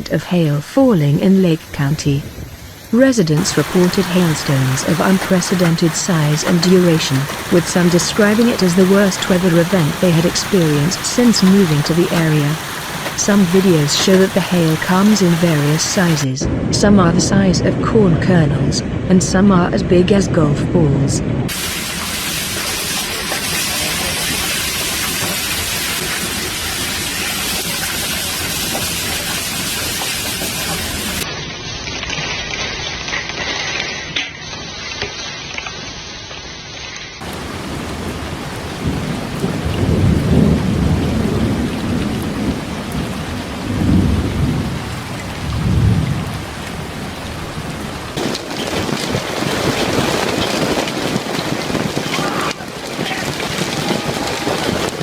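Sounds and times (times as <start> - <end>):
thunder rumbles: 2.0 - 17.3, 37.2 - 55.0
heavy hail and rain pelting: 2.4 - 16.4, 21.5 - 35.7, 37.2 - 55.0.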